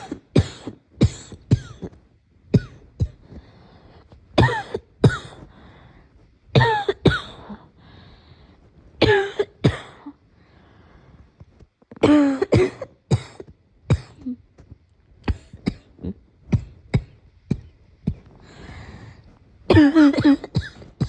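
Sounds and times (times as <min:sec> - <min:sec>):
person coughing: 0:00.0 - 0:02.0, 0:02.6 - 0:03.4, 0:04.4 - 0:05.5, 0:06.6 - 0:07.7, 0:09.0 - 0:10.2, 0:12.0 - 0:14.4, 0:15.3 - 0:18.2, 0:19.7 - 0:21.0.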